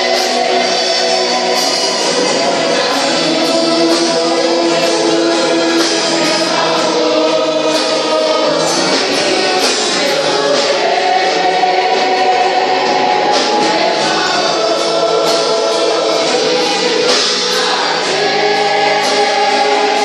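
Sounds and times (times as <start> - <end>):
band playing: 0.0 - 20.0
choir singing: 0.0 - 20.0
percussion hits: 0.0 - 20.0.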